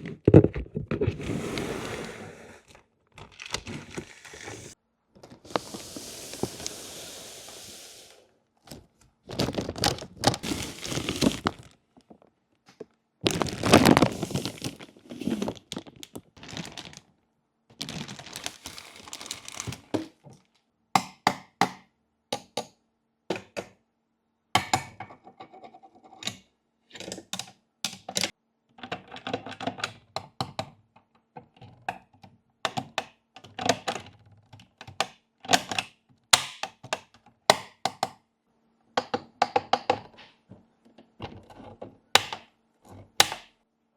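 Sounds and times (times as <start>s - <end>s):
packaging rustle: 8.7s - 12.2s, 13.2s - 17.1s, 17.7s - 20.6s.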